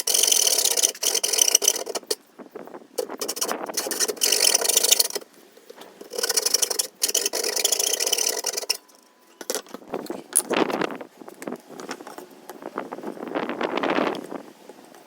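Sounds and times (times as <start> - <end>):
hand tool scraping wood: 0.0 - 2.2, 3.0 - 10.9.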